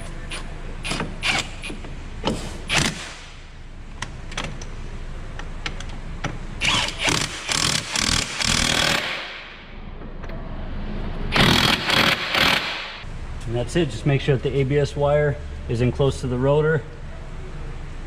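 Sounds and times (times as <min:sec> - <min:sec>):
steady low hum: 0:00.0 - 0:18.0
short noisy tool bursts: 0:11.3 - 0:13.0.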